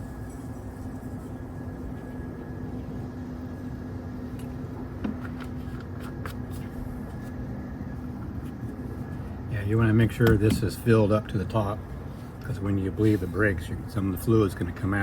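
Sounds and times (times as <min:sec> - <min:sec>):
faint steady tone: 0:00.0 - 0:05.0
low mechanical hum: 0:00.0 - 0:15.0.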